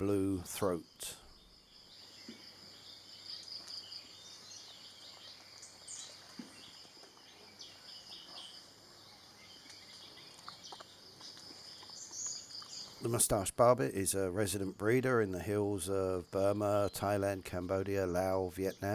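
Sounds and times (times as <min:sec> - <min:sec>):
bird chirps: 0:00.0 - 0:13.4.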